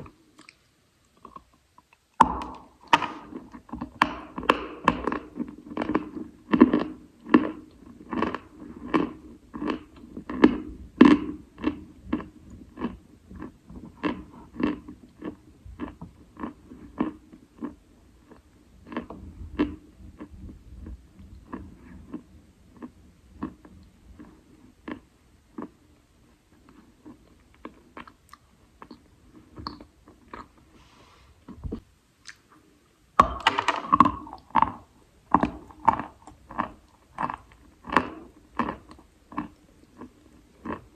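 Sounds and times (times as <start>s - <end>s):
person chewing chalk crunching: 0.3s - 30.8s, 33.4s - 40.9s.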